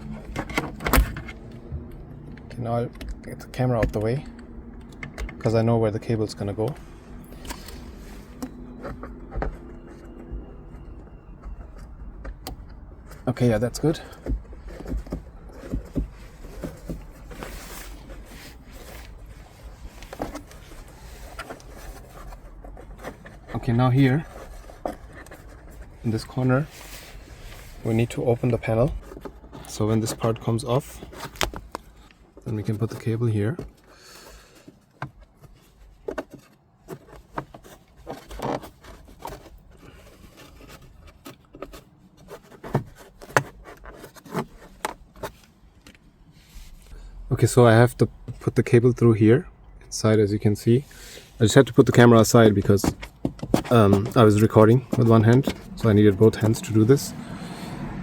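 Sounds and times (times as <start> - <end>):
rubbing rustle on trim: 13.3 - 32.2, 34.0 - 47.0.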